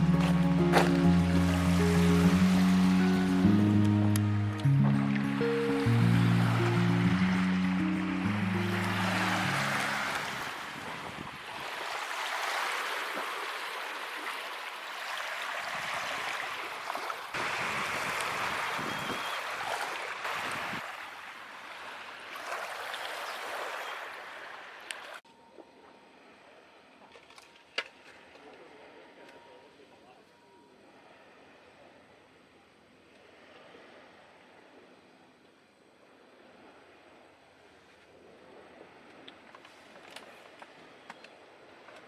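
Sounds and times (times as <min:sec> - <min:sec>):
small waves washing onto shore: 0:00.0 - 0:25.2.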